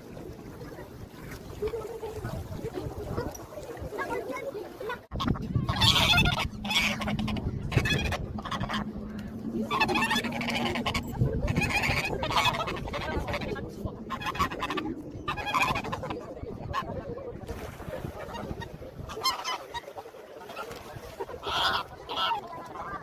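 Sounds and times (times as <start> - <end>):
people's voices: 0.0 - 23.0
geese honking: 5.2 - 17.0, 18.3 - 22.5.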